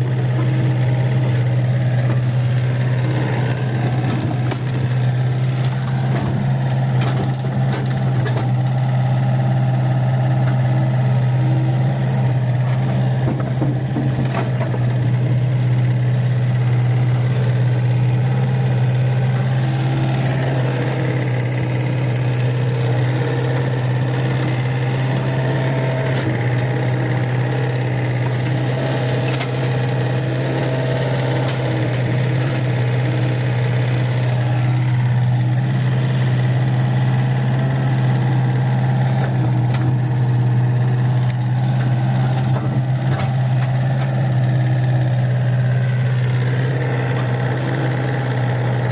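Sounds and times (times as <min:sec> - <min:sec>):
excavator diesel engine running: 0:00.0 - 0:48.9.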